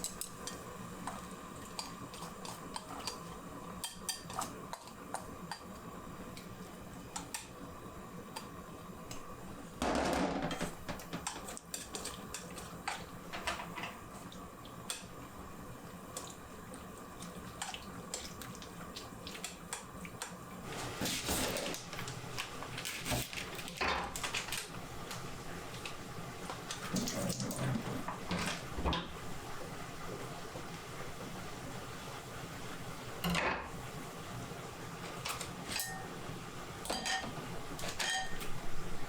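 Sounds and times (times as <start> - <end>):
dishes and utensils clinking: 35.3 - 36.2, 36.8 - 38.5.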